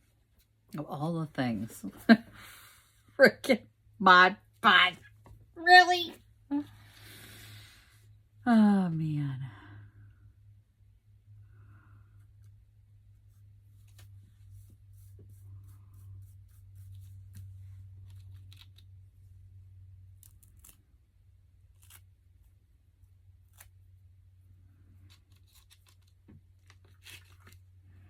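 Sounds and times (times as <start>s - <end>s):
paper clicks and rustles: 16.9s - 19.0s, 24.9s - 27.7s.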